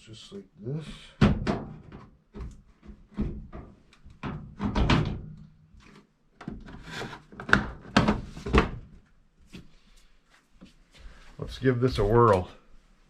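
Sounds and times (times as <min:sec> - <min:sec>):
panels knocking into place: 0:01.1 - 0:05.4.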